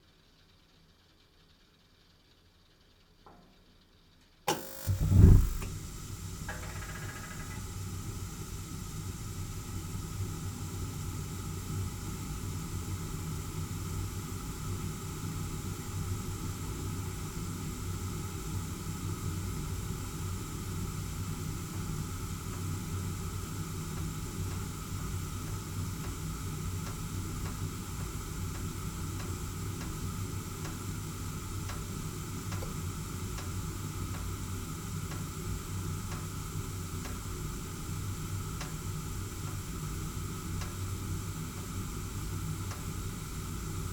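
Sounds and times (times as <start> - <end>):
gas burner flame hissing: 4.5 - 6.5, 7.6 - 43.9
metal ticking as it heats: 26.8 - 30.0.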